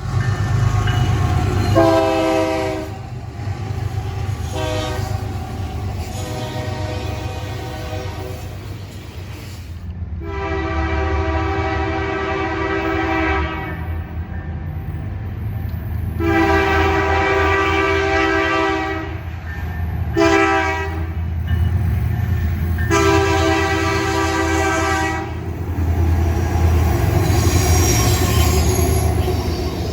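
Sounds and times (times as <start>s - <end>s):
low locomotive rumble: 0.0s - 29.9s
locomotive air horn blasts: 1.7s - 3.0s, 4.4s - 5.2s, 6.0s - 8.4s, 10.2s - 14.0s, 16.2s - 19.3s, 20.1s - 21.1s, 22.9s - 25.4s.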